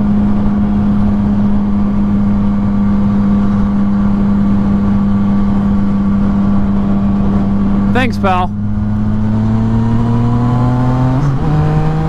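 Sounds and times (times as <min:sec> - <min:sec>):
motorcycle engine running: 0:00.0 - 0:10.1.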